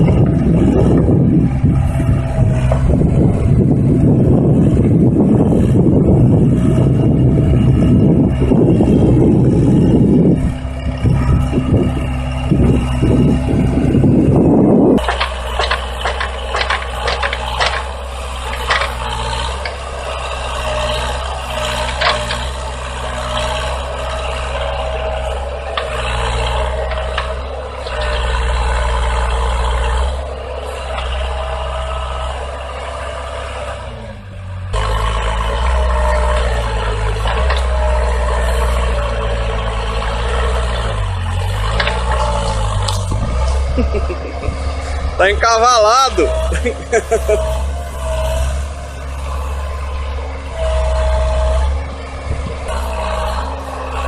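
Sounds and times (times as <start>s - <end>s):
heavy diesel machinery droning: 0.0s - 54.0s
metallic knocks and rattles: 15.0s - 23.2s.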